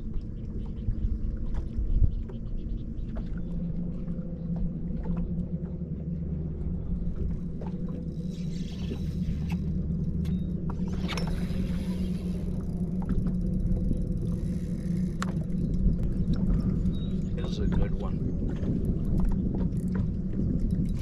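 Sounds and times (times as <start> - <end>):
boat motor humming: 0.0 - 21.0
faint clicks: 12.0 - 21.0.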